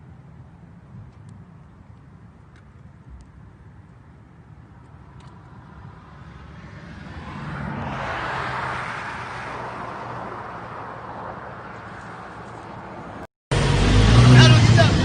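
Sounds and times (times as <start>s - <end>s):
vehicle passing by: 5.4s - 15.0s.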